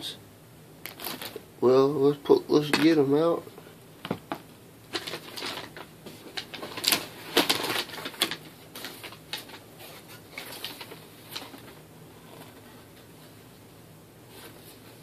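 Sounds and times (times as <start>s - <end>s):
rustles of handling a shoebox: 4.9s - 13.5s, 14.2s - 15.0s.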